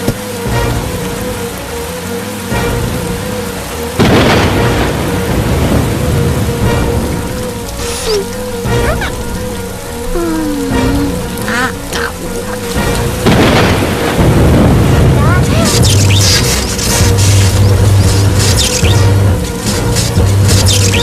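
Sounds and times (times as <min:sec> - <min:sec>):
cartoon rushing water: 0:00.0 - 0:21.0
held musical tone: 0:06.6 - 0:14.8.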